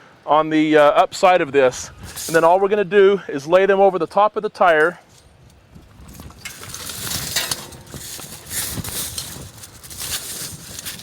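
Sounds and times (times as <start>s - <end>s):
tire chains rattling: 2.0s - 2.6s, 4.7s - 11.0s.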